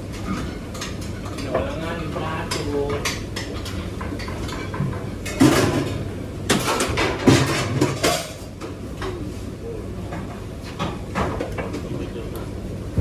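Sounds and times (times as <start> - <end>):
loud kitchen clatters: 0.0 - 9.2, 10.1 - 12.0
low machinery hum: 8.6 - 13.0.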